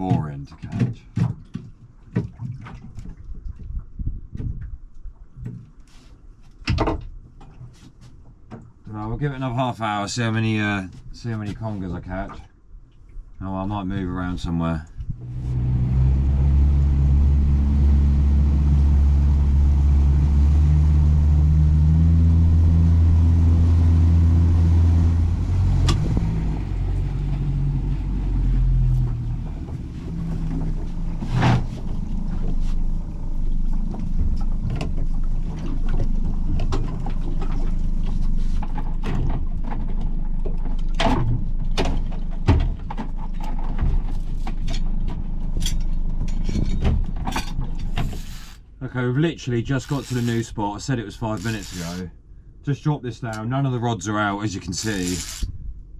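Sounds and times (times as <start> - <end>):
boat engine running: 15.0 - 48.6, 49.6 - 52.1.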